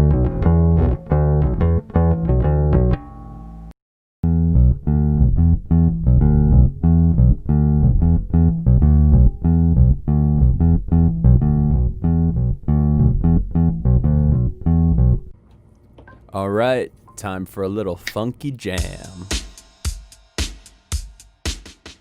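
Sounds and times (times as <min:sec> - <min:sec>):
bass guitar plucked riff: 0:00.0 - 0:15.4.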